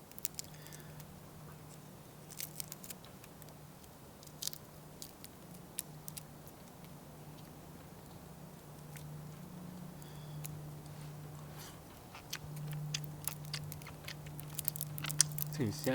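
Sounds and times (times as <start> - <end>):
steady low hum: 0.0 - 15.9
person chewing crunchy food: 9.9 - 15.9.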